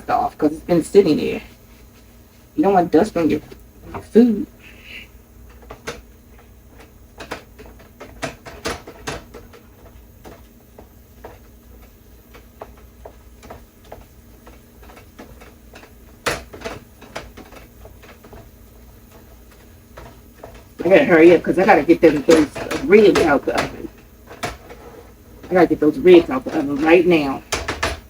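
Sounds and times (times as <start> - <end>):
kitchen utensils clicking: 19.1 - 28.0.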